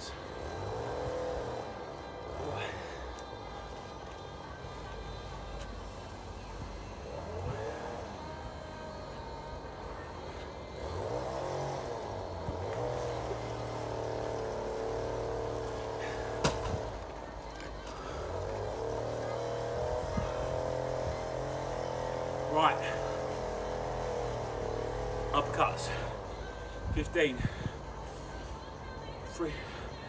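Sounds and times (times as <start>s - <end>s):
lawn mower engine running: 5.1s - 28.6s.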